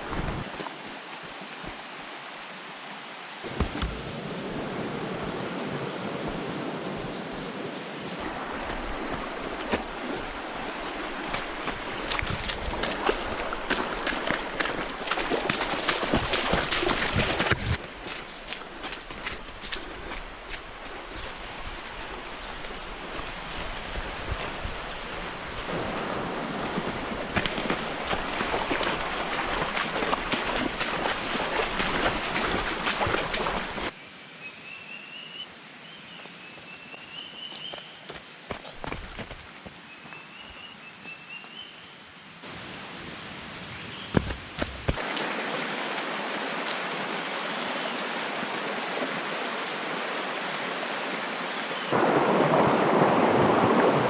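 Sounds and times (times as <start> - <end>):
river water rushing: 0.0 - 34.0, 42.4 - 54.0
wind: 0.0 - 54.0
quick footfalls: 3.5 - 4.0, 11.3 - 25.4, 38.1 - 39.8, 44.1 - 45.1.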